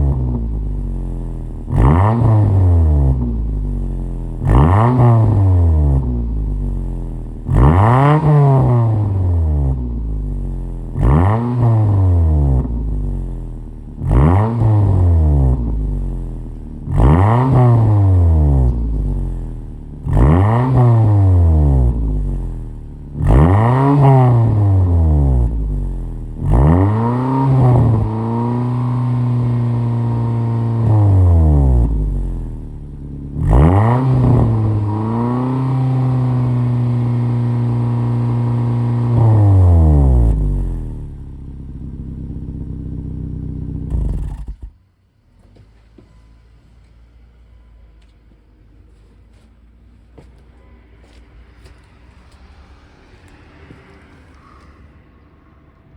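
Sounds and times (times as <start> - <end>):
car engine revving: 0.0 - 44.8.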